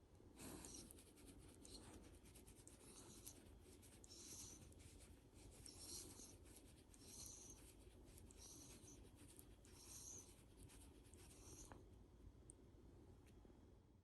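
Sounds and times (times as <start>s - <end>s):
faint scratching and rubbing: 0.4s - 11.8s.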